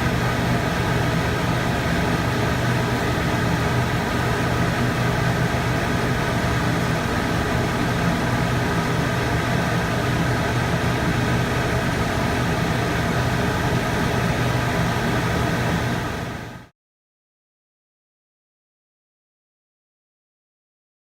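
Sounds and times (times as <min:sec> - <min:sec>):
machine hum with hiss: 0:00.0 - 0:16.7.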